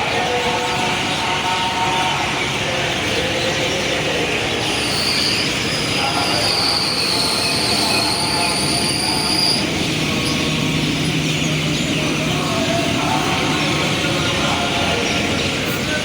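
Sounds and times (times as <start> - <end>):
city traffic: 0.0 - 16.0
high-pitched metallic squeal: 4.6 - 10.7.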